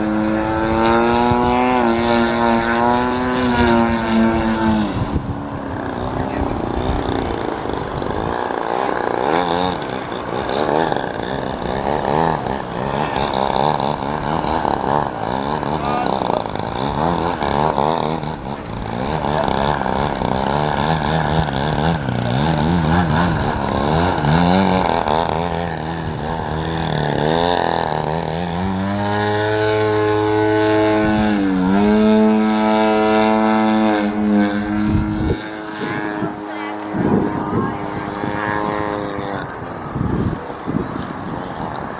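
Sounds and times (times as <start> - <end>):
model plane motor and propeller: 0.0 - 41.9.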